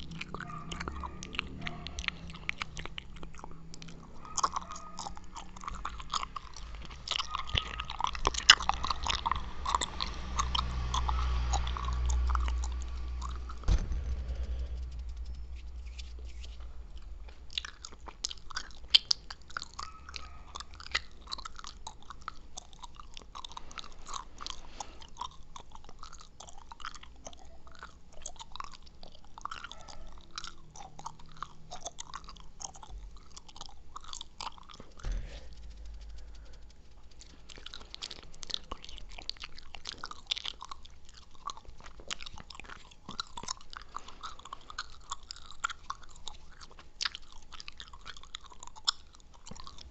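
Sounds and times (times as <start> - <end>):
gum chewing mouth sounds: 0.0 - 49.9
low thump: 12.8 - 17.6, 35.0 - 36.1.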